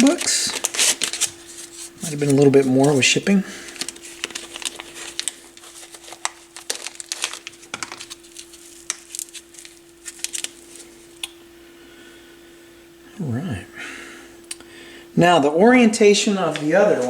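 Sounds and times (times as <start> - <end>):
packaging crinkling and clicking: 0.0 - 11.4
faint steady hum: 0.0 - 17.0.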